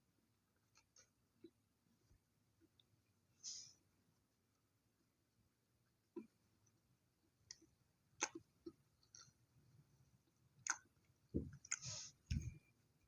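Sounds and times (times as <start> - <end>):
mouth clicks: 8.2 - 8.4.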